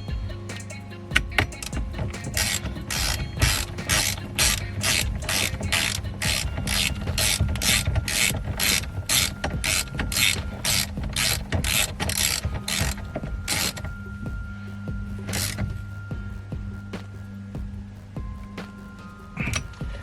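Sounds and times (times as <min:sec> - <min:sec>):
socket ratchet clicking: 0:01.5 - 0:13.9.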